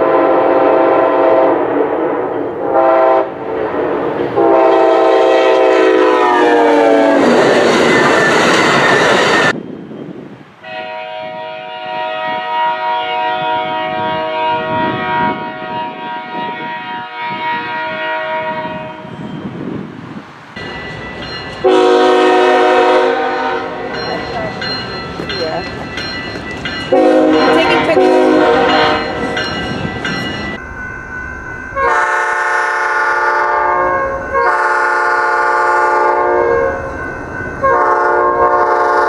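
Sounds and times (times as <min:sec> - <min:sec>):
locomotive air horn chord: 0:00.0 - 0:01.7, 0:02.6 - 0:03.4, 0:04.4 - 0:07.3, 0:10.6 - 0:19.2, 0:21.6 - 0:24.0, 0:26.9 - 0:29.3, 0:31.8 - 0:36.9, 0:37.6 - 0:39.0
train rumbling: 0:00.0 - 0:39.0.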